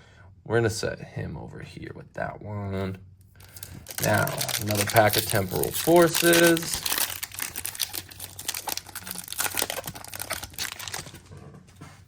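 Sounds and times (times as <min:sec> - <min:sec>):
foil wrapper crinkling and tearing: 0:03.4 - 0:11.3.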